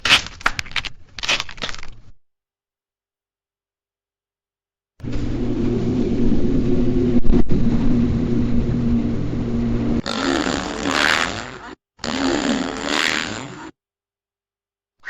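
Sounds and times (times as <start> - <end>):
fart sound effects: 10.0 - 13.8.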